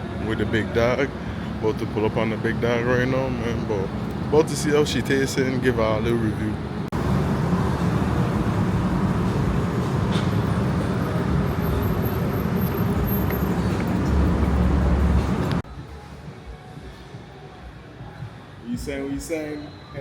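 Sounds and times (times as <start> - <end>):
car road and engine rumble: 0.0 - 15.7.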